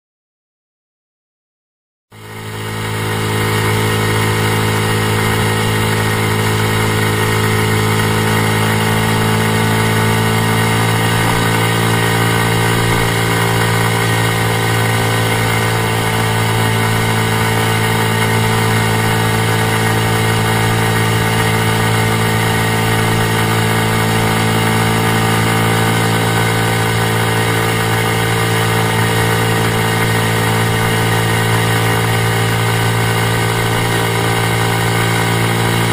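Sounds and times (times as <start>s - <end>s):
motorcycle engine running: 2.1s - 35.9s.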